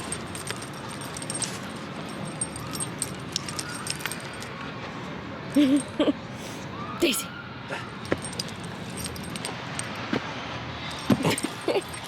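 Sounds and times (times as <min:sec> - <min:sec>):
dog tags jingling: 0:00.0 - 0:04.6, 0:08.0 - 0:10.1, 0:10.9 - 0:12.0.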